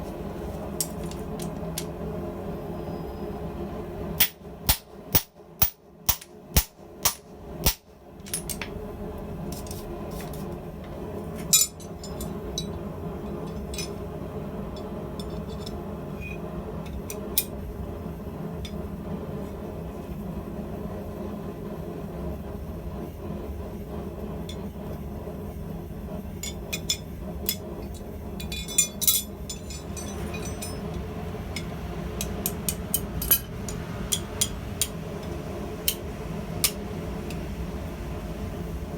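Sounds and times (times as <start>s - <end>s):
hammer striking steel on anvil: 4.2s - 7.9s, 28.4s - 35.0s
light taps and clinks of tools: 11.4s - 12.8s, 26.4s - 36.0s.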